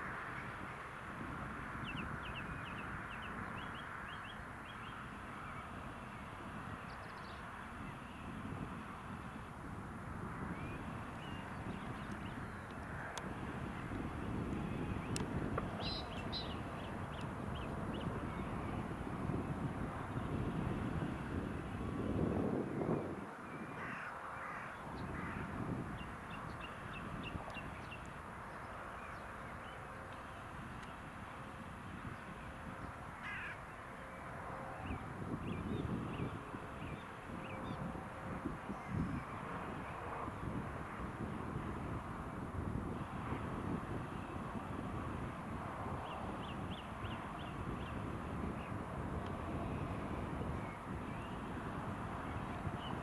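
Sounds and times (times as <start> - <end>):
crows cawing: 23.8 - 25.5, 33.2 - 33.6.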